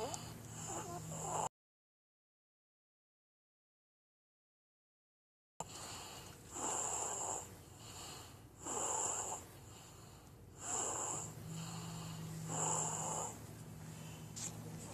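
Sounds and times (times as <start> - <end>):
person snoring wheezily: 0.0 - 1.5, 5.6 - 9.9, 10.6 - 13.4.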